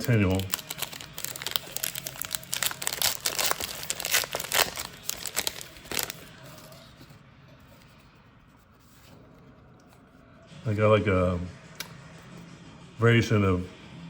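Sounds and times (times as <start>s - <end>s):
foil wrapper crinkling: 0.0s - 7.0s.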